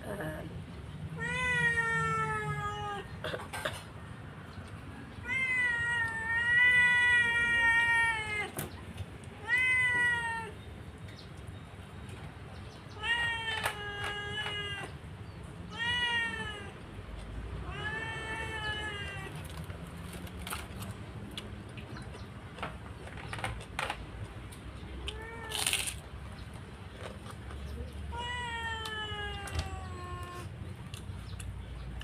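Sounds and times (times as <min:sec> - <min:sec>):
cat meowing: 0:01.2 - 0:03.2, 0:05.2 - 0:08.7, 0:09.4 - 0:10.6, 0:12.9 - 0:15.0, 0:15.7 - 0:16.8, 0:17.6 - 0:19.5, 0:28.1 - 0:30.6.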